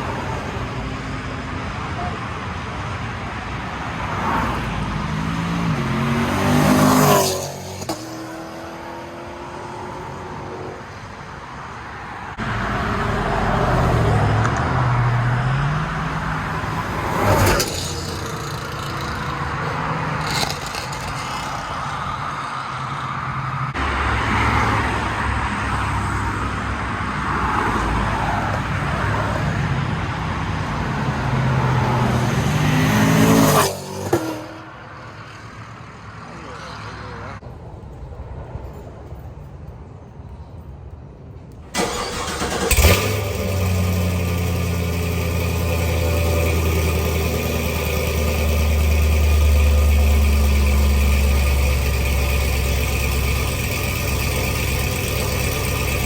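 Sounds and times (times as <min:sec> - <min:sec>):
car engine revving: 0:04.2 - 0:10.6, 0:12.4 - 0:24.8, 0:41.8 - 0:56.0.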